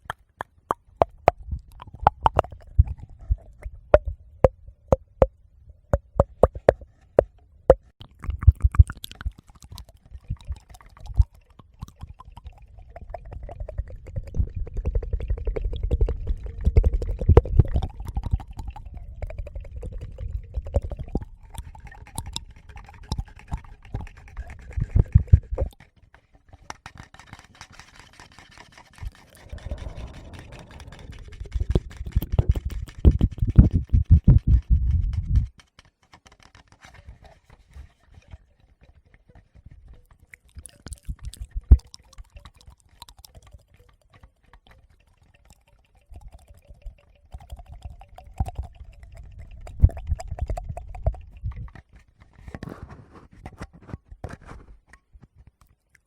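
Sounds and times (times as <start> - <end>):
fingers clicking on microphone: 0.0 - 3.0, 6.0 - 24.1, 29.0 - 36.7.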